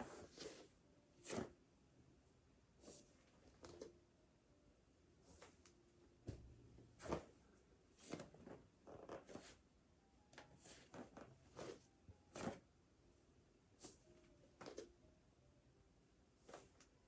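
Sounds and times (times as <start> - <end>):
clothing and mat rustling: 0.0 - 1.5, 5.2 - 5.7, 6.3 - 9.6, 10.4 - 12.6.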